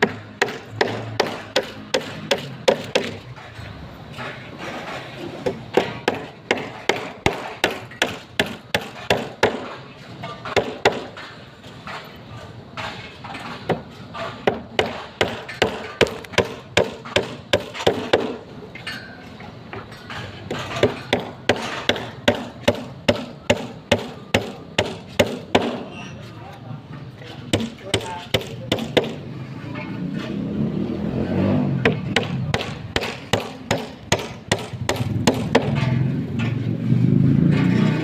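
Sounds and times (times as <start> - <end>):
hammer striking: 0.0 - 12.2, 12.8 - 19.1, 19.7 - 26.0, 27.5 - 29.3, 31.8 - 36.6.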